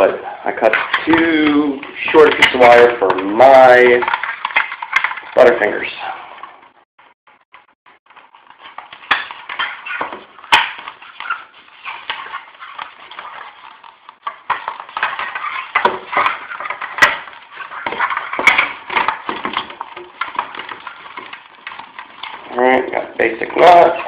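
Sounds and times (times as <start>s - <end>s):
wire scraping and rustling: 0.0s - 6.9s, 7.6s - 24.0s.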